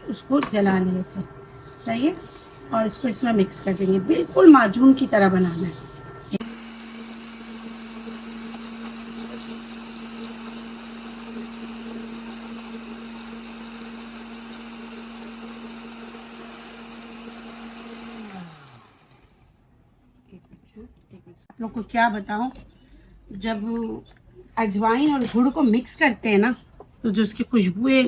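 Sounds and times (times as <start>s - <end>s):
electric grinder motor humming: 0.0s - 19.5s.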